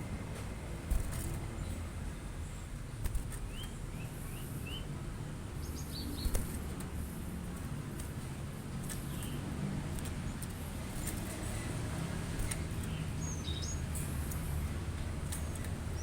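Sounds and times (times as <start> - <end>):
low background noise: 0.0 - 16.0
bird chirping: 3.4 - 5.0, 5.6 - 6.8, 8.9 - 9.6, 11.0 - 16.0
sharp clicks: 8.9 - 11.4, 12.3 - 13.0.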